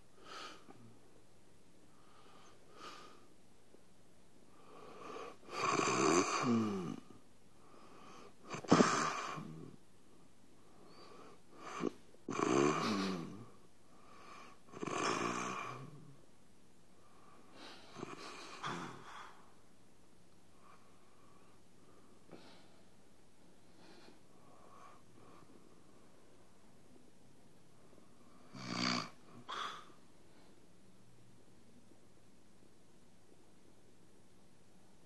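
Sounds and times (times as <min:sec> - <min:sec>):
faint breaths: 0:00.0 - 0:01.1, 0:01.8 - 0:03.4, 0:04.4 - 0:05.6, 0:06.3 - 0:12.1, 0:12.7 - 0:14.8, 0:16.8 - 0:19.7, 0:20.4 - 0:31.1
man snoring: 0:05.0 - 0:07.1, 0:08.5 - 0:09.8, 0:11.6 - 0:13.5, 0:14.7 - 0:16.0, 0:28.4 - 0:29.8.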